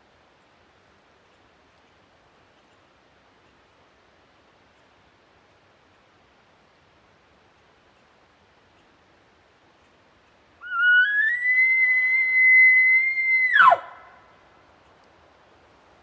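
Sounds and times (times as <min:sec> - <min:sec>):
elk bugling: 0:10.6 - 0:14.2.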